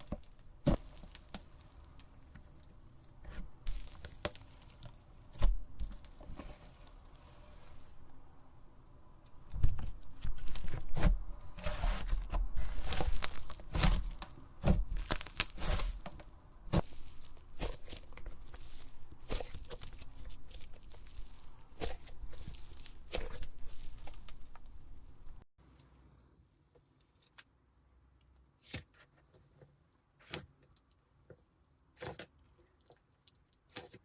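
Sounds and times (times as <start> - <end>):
slime crackling and popping: 0.0 - 2.4, 3.3 - 6.2, 12.6 - 25.4.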